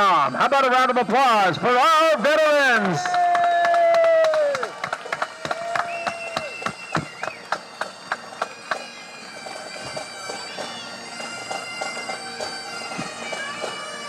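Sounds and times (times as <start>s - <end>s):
bagpipes playing over drones: 0.0s - 3.2s, 4.3s - 14.0s
drum beats: 2.8s - 8.9s.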